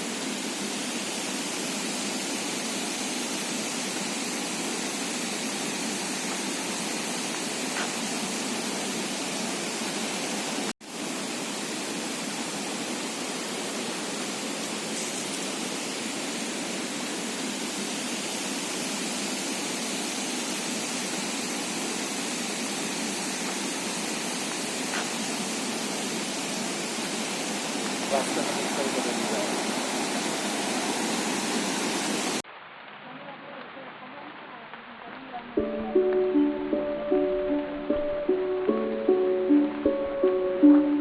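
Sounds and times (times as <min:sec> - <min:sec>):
waterfall roar: 0:00.0 - 0:32.4.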